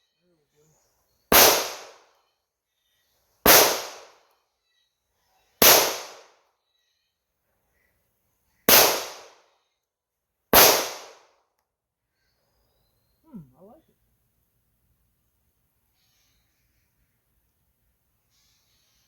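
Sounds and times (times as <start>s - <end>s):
pistol shots with echo: 1.3s - 2.1s, 3.5s - 4.2s, 5.6s - 6.3s, 8.7s - 9.4s, 10.6s - 11.3s.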